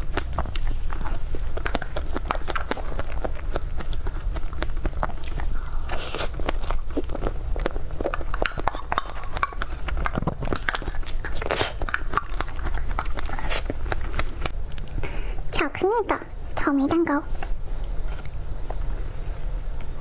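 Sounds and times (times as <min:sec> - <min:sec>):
biting and chewing: 0:00.0 - 0:15.1, 0:17.4 - 0:20.0
wet mouth clicks: 0:00.0 - 0:15.1.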